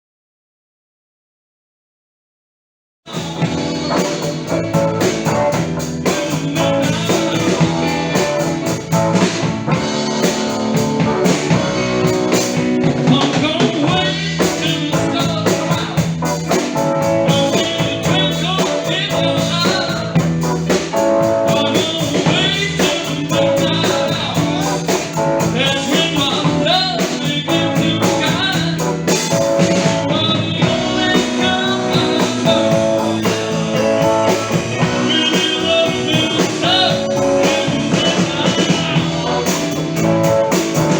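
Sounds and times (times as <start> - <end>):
live blues-rock band: 3.1 - 40.9.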